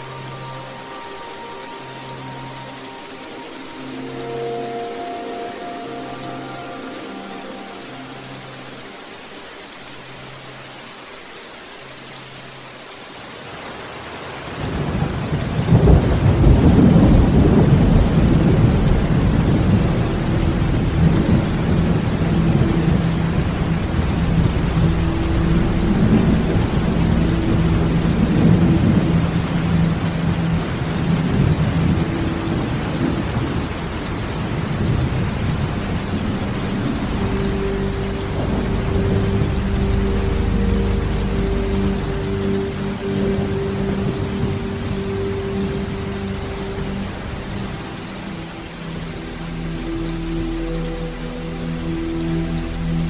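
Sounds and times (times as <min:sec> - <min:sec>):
steady rain hissing: 0:00.0 - 0:53.0
thunder rumbling: 0:14.6 - 0:47.9.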